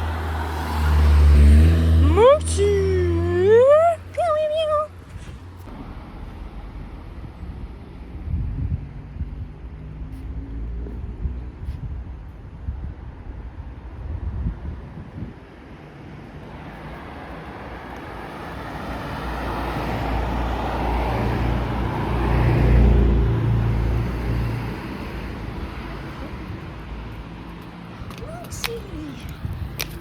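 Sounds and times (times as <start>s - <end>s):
motor vehicle passing by: 0.0s - 5.7s, 8.3s - 11.9s, 16.5s - 30.0s.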